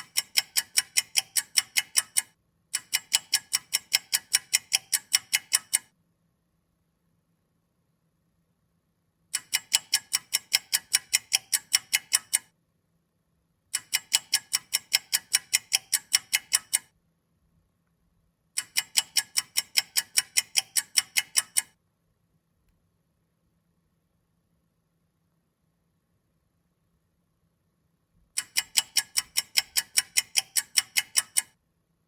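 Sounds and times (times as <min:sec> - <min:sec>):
clock ticking rapidly: 0:00.0 - 0:06.0, 0:09.3 - 0:12.5, 0:13.7 - 0:17.0, 0:18.5 - 0:21.8, 0:28.3 - 0:31.6.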